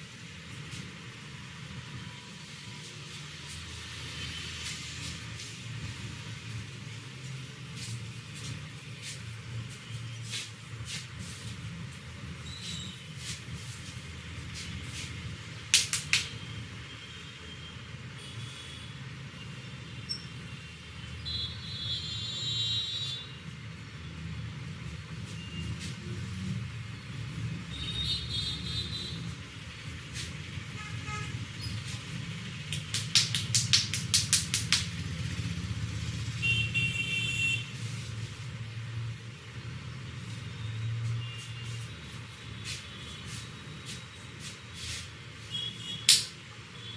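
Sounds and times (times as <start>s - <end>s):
street traffic hum: 0.0s - 46.9s
finger snaps: 15.7s - 16.3s, 32.7s - 34.9s, 46.1s - 46.3s
hands tapping and slapping head: 15.7s - 16.4s, 32.7s - 35.0s, 46.1s - 46.3s
car horns honking: 30.7s - 31.4s.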